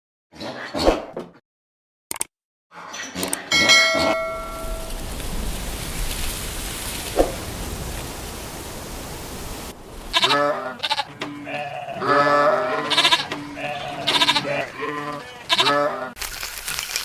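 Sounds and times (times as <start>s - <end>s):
steady outdoor hiss: 4.2s - 15.5s
goats bleating: 10.1s - 16.2s.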